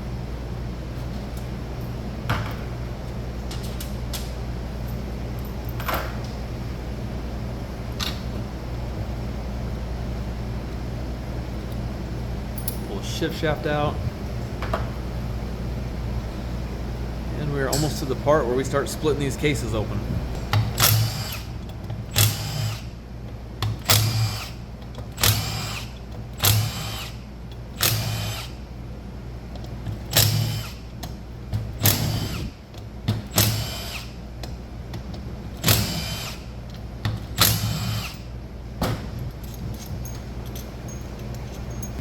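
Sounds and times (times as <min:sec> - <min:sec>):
cordless power driver bursts: 0:20.8 - 0:21.5, 0:22.1 - 0:22.9, 0:23.8 - 0:24.6, 0:25.2 - 0:27.2, 0:27.8 - 0:28.5, 0:30.1 - 0:30.8, 0:31.8 - 0:32.6, 0:33.3 - 0:34.2, 0:35.6 - 0:36.5, 0:37.4 - 0:38.3.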